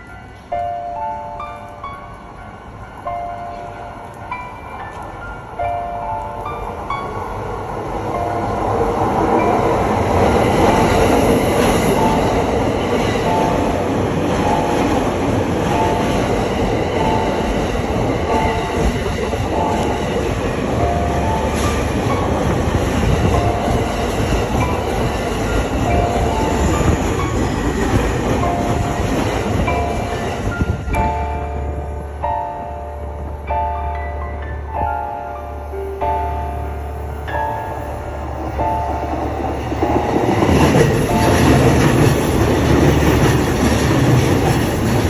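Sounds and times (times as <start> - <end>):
train wheel and rail rumble: 0.0 - 45.0
level-crossing electronic ding: 36.1 - 43.2.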